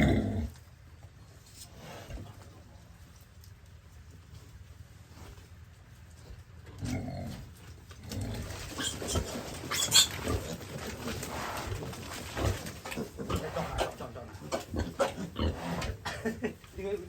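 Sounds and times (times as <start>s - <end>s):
pigs grunting: 0.0s - 0.6s, 6.7s - 16.4s.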